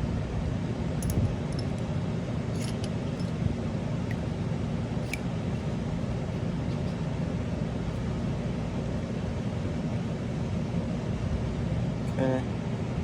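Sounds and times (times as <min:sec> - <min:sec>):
low background hum: 0:00.0 - 0:13.0
small clicks and taps of parts: 0:01.0 - 0:01.8.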